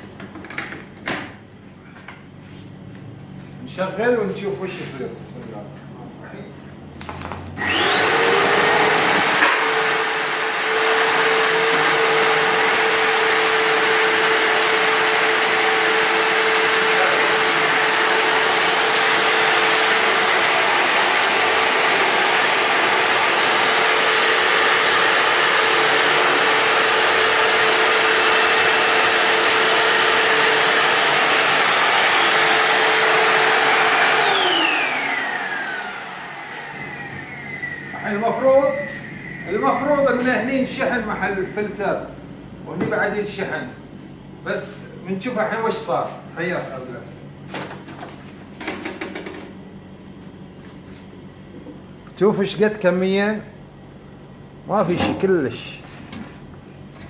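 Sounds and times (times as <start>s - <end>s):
vacuum cleaner motor whining: 7.6s - 40.4s.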